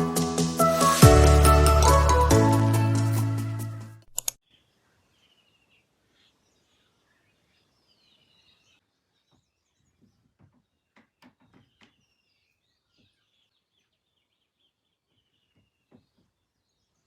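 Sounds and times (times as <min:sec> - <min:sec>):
birds chirping and trilling: 0:04.4 - 0:17.0.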